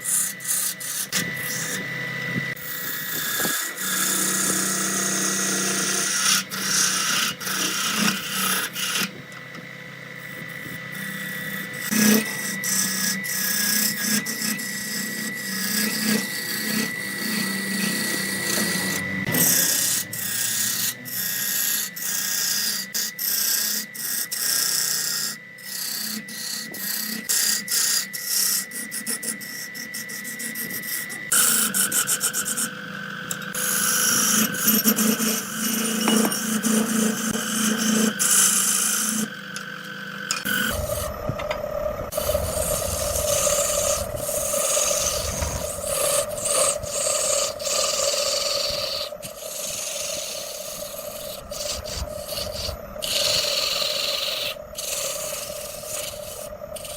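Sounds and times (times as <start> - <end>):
turning tool scraping wood: 0.0 - 1.9, 2.5 - 9.2, 10.2 - 32.7, 33.3 - 39.4, 40.3 - 56.9
wood lathe motor whine: 0.0 - 56.9.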